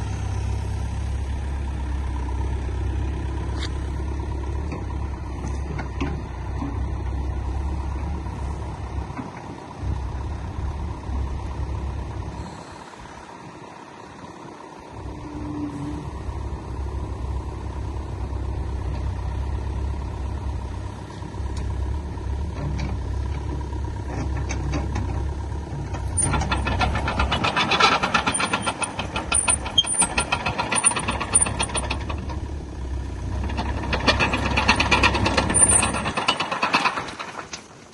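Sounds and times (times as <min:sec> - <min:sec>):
excavator diesel engine running: 0:00.0 - 0:37.9
rapid metallic clatter: 0:25.8 - 0:32.5, 0:33.3 - 0:37.9.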